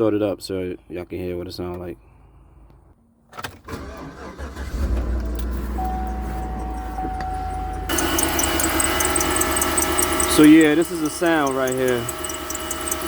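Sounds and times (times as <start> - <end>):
engine starting and idling: 3.4 - 13.0
thin steady tone: 5.8 - 13.0
click: 7.9 - 13.0.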